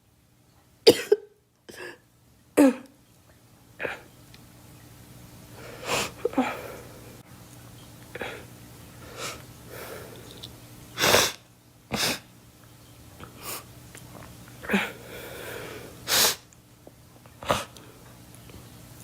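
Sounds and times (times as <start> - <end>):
girl coughing: 0.9 - 2.0, 2.6 - 2.9.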